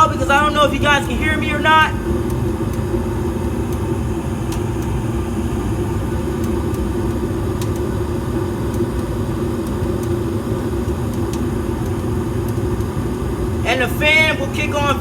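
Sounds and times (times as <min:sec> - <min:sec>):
gas flames rumbling: 0:00.0 - 0:15.0
inducer motor hum: 0:00.0 - 0:15.0
faint ticks: 0:02.0 - 0:13.4.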